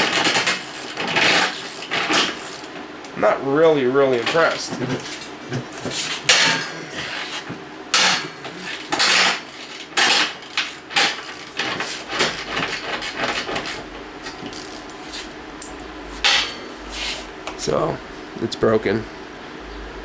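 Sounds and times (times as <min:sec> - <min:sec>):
metal tools clanking together: 0:08.0 - 0:15.0.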